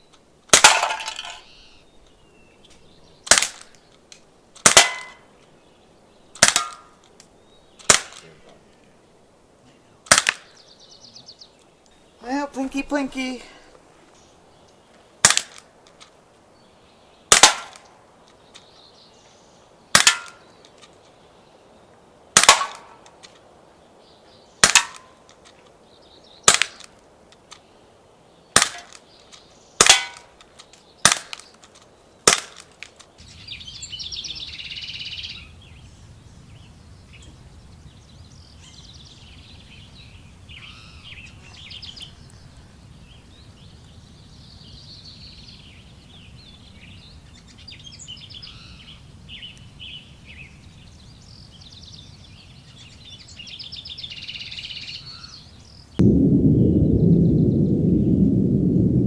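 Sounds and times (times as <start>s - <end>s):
birds chirping: 0.0s - 58.4s
gunshots: 6.4s - 6.8s, 17.3s - 17.8s, 22.4s - 23.0s.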